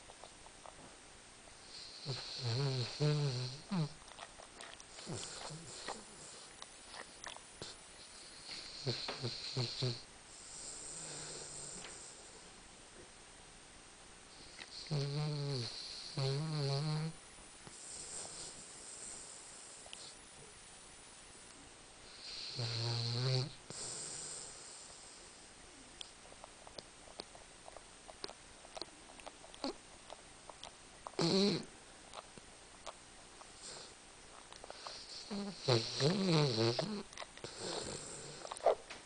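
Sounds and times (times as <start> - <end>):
dog snoring: 1.6 - 12.4, 14.4 - 20.2, 22.1 - 25.3, 31.1 - 31.7, 33.6 - 34.0, 34.6 - 38.8.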